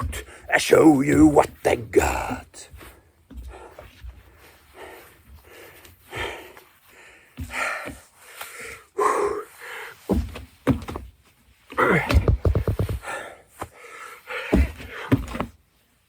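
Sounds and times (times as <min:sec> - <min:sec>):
man breathing hard: 0:02.9 - 0:10.1, 0:13.0 - 0:15.2
thuds of hands or feet landing: 0:11.8 - 0:13.3.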